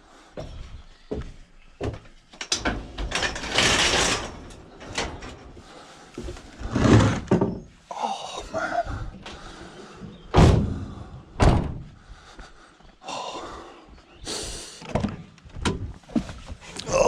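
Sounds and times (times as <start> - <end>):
vehicle door slamming: 10.4 - 11.8.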